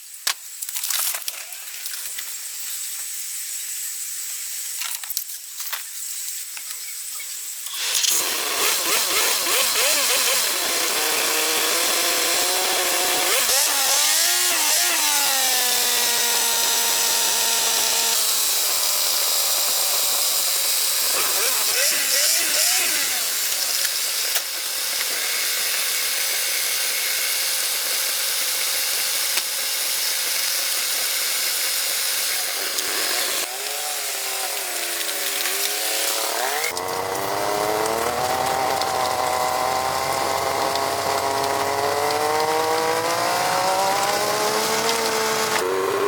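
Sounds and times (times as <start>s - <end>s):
motor running with hiss: 7.5s - 46.0s
motor whine: 7.7s - 20.3s, 21.1s - 23.8s, 32.7s - 46.0s.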